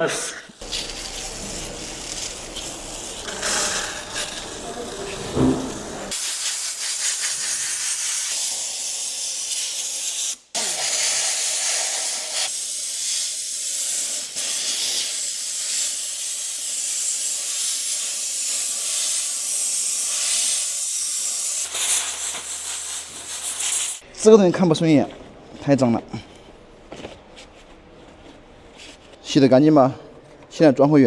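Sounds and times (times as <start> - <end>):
water spray jet hissing: 0.5 - 24.0.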